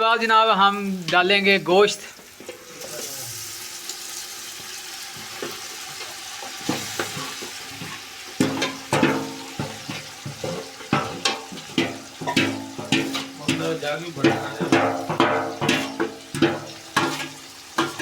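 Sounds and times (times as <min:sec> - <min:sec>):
spices sizzling in a hot pan: 0:00.0 - 0:18.0
ladle clanking against metal pan: 0:06.6 - 0:18.0.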